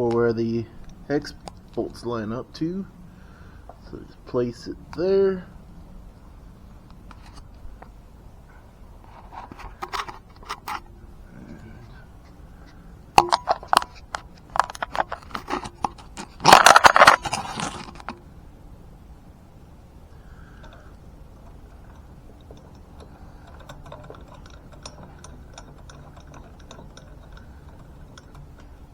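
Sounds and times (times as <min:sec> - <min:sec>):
steady low hum: 0:00.0 - 0:28.9
metal scraping rattle: 0:09.0 - 0:18.2, 0:20.2 - 0:28.9
metal parts clicking and knocking: 0:13.2 - 0:18.2, 0:20.6 - 0:28.9.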